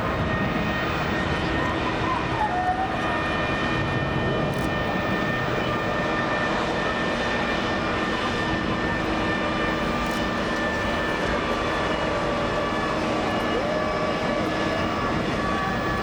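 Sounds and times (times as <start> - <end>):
aircraft turbine whine: 0.0 - 16.0.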